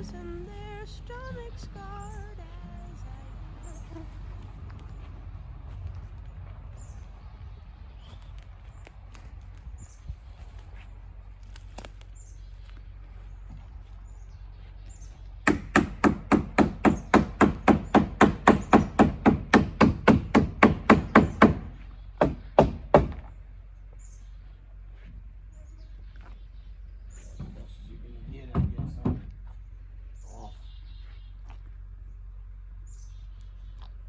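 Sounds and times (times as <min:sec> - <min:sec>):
hammer striking wood: 0:15.4 - 0:23.3.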